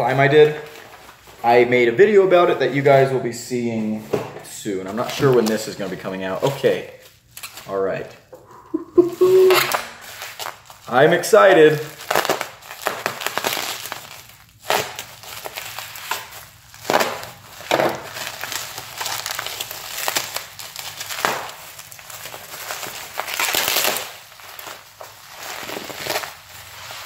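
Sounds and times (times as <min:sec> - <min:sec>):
packing material crinkling: 0:09.2 - 0:27.0.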